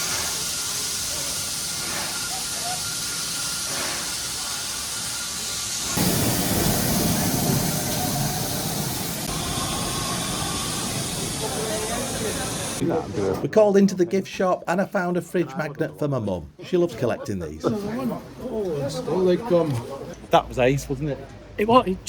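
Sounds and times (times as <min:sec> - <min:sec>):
steam locomotive hissing: 0:00.0 - 0:12.8.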